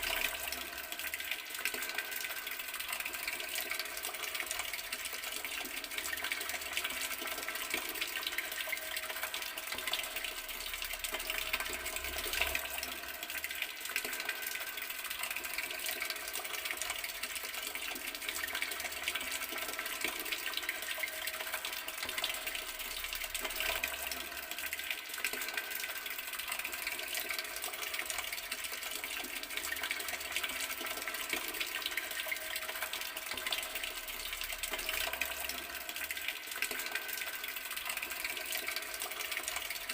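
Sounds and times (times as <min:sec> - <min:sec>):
water running from a tap: 0:00.0 - 0:39.9.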